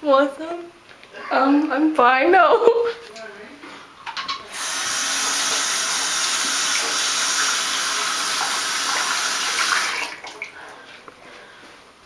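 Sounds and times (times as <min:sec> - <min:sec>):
water running from a tap: 0:04.4 - 0:10.6.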